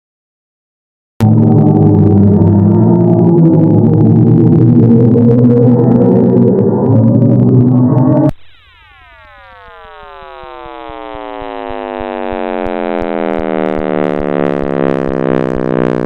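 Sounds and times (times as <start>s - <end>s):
loud noisy synth sound: 1.2s - 16.0s
synth tones sliding downward: 1.2s - 16.0s.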